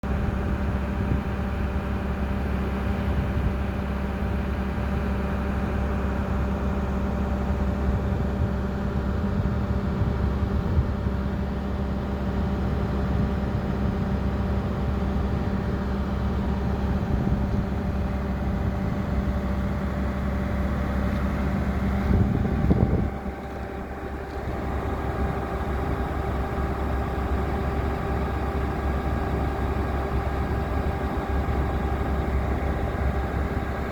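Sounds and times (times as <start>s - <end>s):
diesel engine running: 0.0s - 33.9s.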